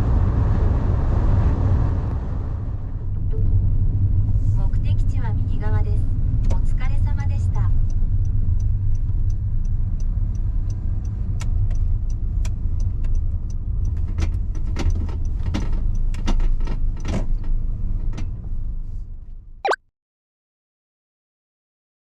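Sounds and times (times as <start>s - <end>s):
car engine and road rumble: 0.0s - 19.6s
light clicks and ticks: 7.8s - 18.3s.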